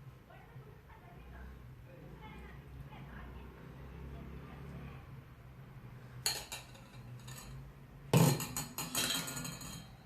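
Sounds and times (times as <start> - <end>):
kitchen utensils clinking: 6.2 - 10.0.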